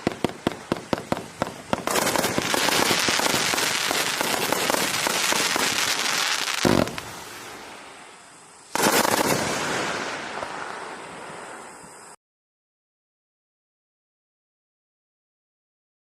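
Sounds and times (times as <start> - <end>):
fireworks cake firing shots: 0.0 - 7.3, 8.7 - 10.7
loud low firework report: 0.0 - 12.0.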